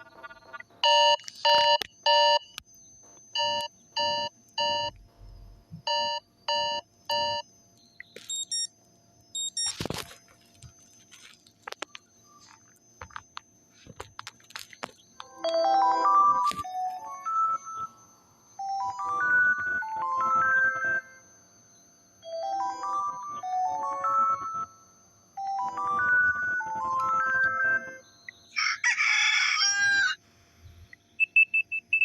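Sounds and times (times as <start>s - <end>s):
chime-like phone beeps: 8.3s - 8.7s, 15.2s - 21.2s, 22.2s - 28.1s.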